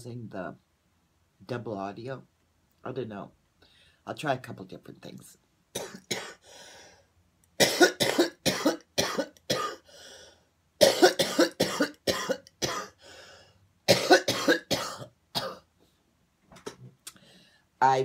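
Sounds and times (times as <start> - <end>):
woman coughing: 5.8 - 6.4, 7.6 - 9.8, 10.8 - 13.0, 13.9 - 15.7
woman breathing in: 6.4 - 7.1, 9.9 - 10.5, 13.0 - 13.6, 17.2 - 17.8.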